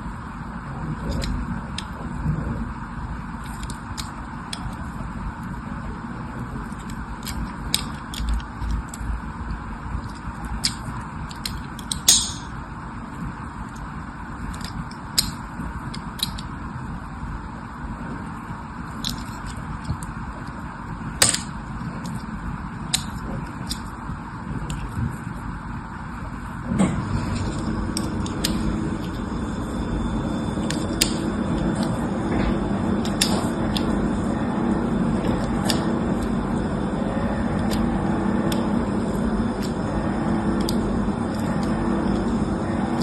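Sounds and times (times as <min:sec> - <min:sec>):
low hum and hiss: 0:00.0 - 0:43.0
handling clicks and crackles: 0:03.4 - 0:05.5, 0:06.6 - 0:12.5, 0:13.6 - 0:16.6, 0:18.9 - 0:20.6, 0:21.2 - 0:22.3
loud snaps: 0:11.4 - 0:12.5.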